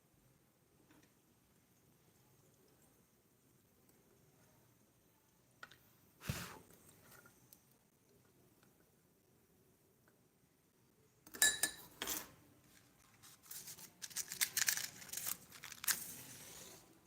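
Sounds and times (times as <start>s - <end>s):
crinkling and rustling: 12.0s - 17.0s.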